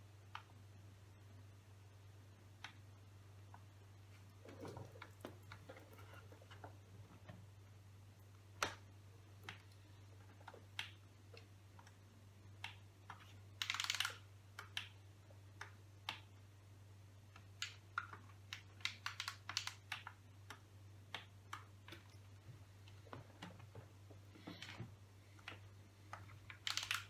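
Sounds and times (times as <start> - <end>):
laptop keyboard keystrokes: 12.6 - 16.4, 17.3 - 22.2, 24.5 - 27.0.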